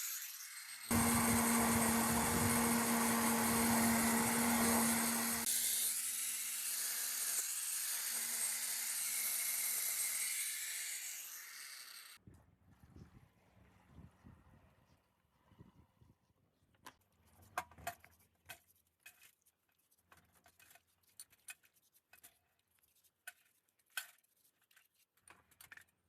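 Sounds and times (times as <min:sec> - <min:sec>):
power tool humming and grinding: 0:00.0 - 0:12.2.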